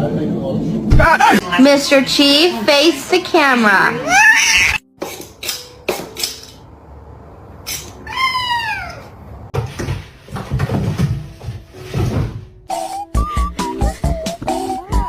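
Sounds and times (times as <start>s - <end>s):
cat meowing: 4.0s - 4.9s, 8.0s - 9.2s
scuffling and knocking: 9.5s - 12.6s.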